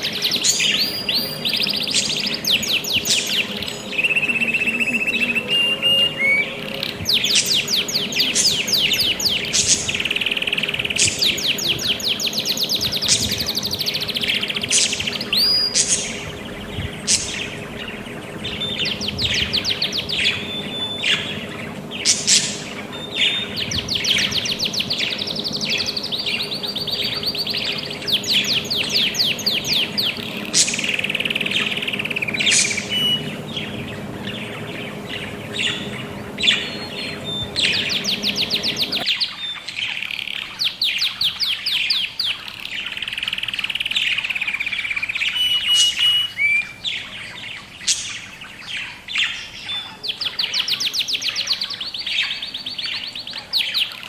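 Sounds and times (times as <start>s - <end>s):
low steady hum: 0.0s - 39.1s
budgerigars chirping: 0.0s - 54.0s.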